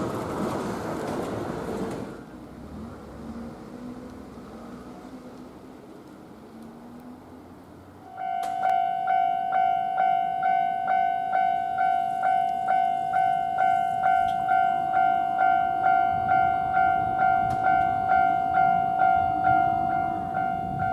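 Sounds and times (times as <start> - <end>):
level crossing warning bell ringing: 8.0 - 20.9.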